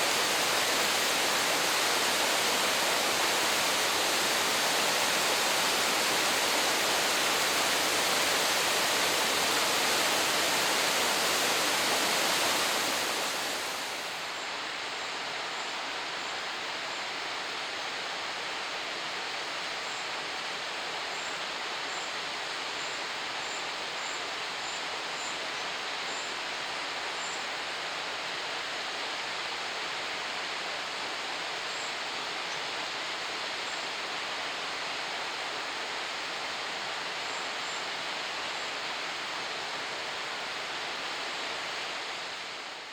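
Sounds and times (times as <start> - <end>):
waterfall rushing: 0.0 - 14.7.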